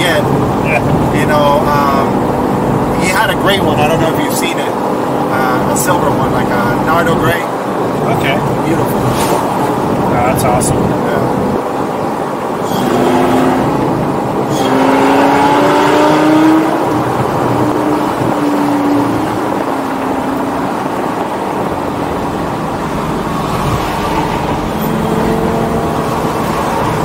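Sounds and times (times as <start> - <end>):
car engine accelerating: 0.0 - 27.0
road noise: 0.0 - 27.0.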